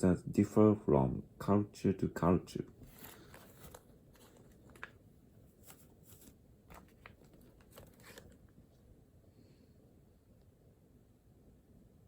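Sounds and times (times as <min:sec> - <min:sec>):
faint scratching and rustling of paper: 0:02.7 - 0:09.7.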